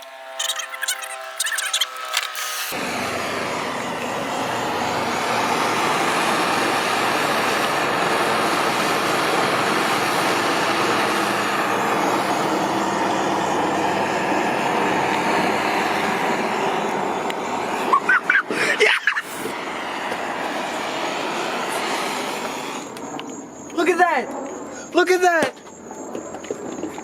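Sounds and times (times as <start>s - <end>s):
torch flame burning: 19.3s - 23.2s.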